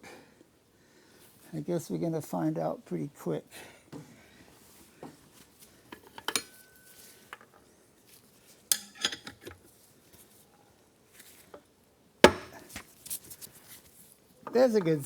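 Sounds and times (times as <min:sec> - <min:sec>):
sharp loud pop: 0:12.2 - 0:12.6.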